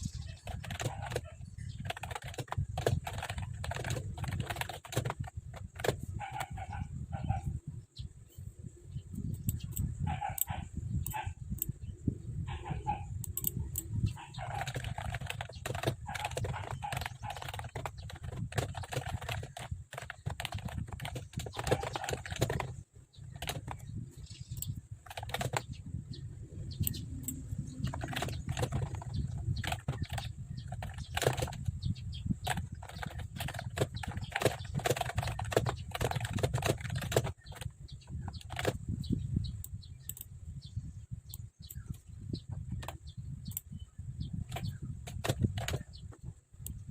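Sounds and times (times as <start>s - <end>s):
chickens and birds calling: 0.0s - 7.6s, 9.6s - 26.1s.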